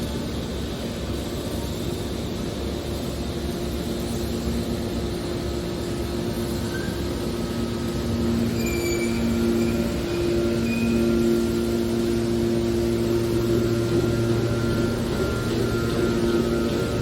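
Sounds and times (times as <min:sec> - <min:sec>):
baler machine hum: 0:02.1 - 0:17.0
high squeaks: 0:08.2 - 0:17.0.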